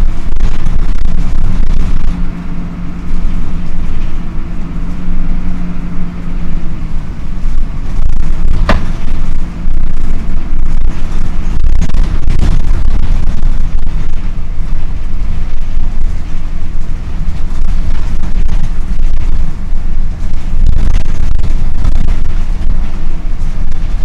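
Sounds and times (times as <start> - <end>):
cooling fan droning: 0.0 - 24.0
sharp knock: 8.6 - 9.1.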